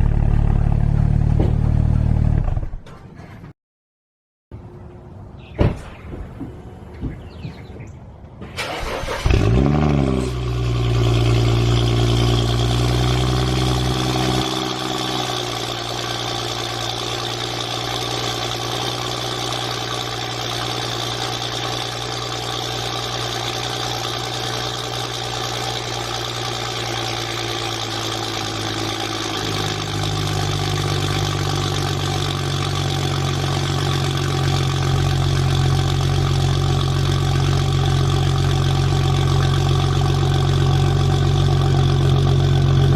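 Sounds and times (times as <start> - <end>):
engine starting and idling: 8.4 - 11.0.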